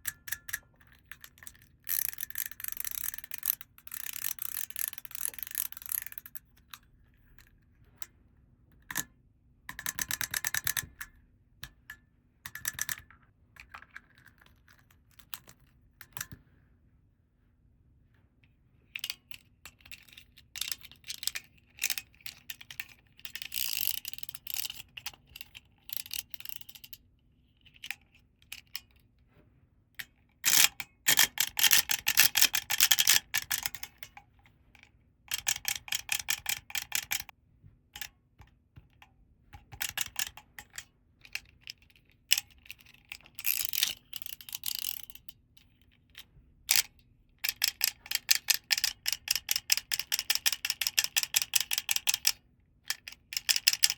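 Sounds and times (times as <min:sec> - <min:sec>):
plastic toy parts clicking and rattling: 0:00.0 - 0:07.6, 0:09.7 - 0:16.4, 0:19.0 - 0:29.0, 0:30.0 - 0:37.4, 0:39.6 - 0:53.9.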